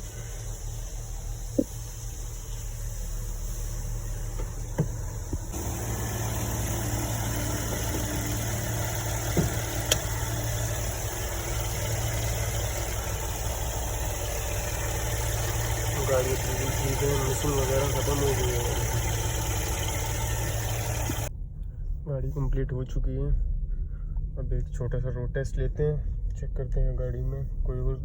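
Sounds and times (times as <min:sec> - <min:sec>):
car engine idling: 0:00.0 - 0:21.3.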